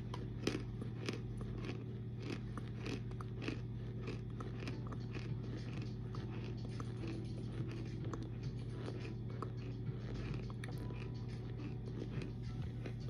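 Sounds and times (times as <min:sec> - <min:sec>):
chewing crunches: 0:00.0 - 0:13.0
steady low hum: 0:00.0 - 0:13.0.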